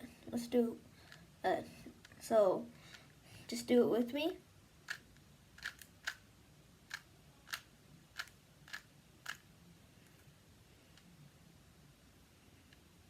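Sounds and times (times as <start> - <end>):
puzzle cube clicks: 4.8 - 6.3, 6.9 - 9.5.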